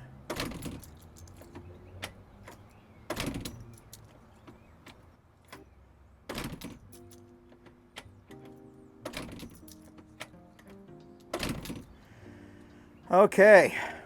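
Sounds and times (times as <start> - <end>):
door latch clicks: 0.3 - 5.7, 6.3 - 12.0.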